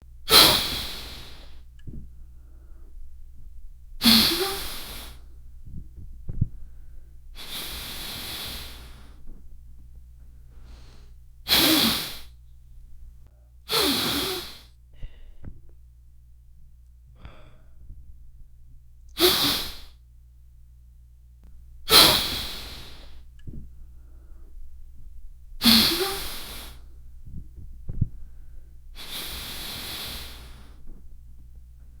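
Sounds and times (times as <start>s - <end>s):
wet nose blows: 0.3s - 2.2s, 4.0s - 6.1s, 7.3s - 9.4s, 10.6s - 12.4s, 13.7s - 14.7s, 19.2s - 20.0s, 21.9s - 23.7s, 25.6s - 28.1s, 29.0s - 31.0s.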